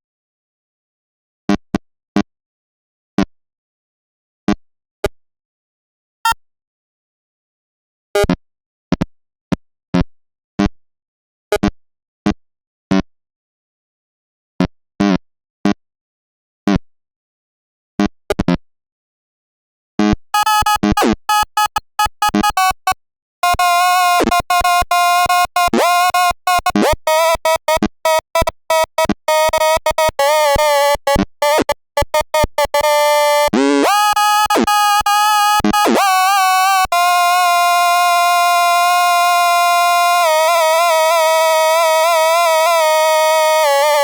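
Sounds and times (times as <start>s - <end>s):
glitchy synthesized stuttering tone: 20.4s - 44.0s.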